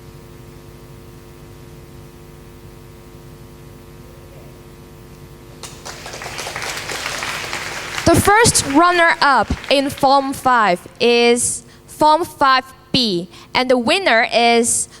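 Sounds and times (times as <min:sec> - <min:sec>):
electrical mains hum: 0:00.0 - 0:15.0
applause: 0:05.6 - 0:11.6.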